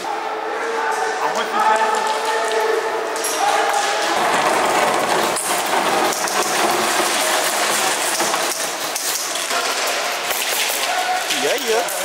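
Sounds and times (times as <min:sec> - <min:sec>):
airsoft guns firing: 0:03.6 - 0:11.3.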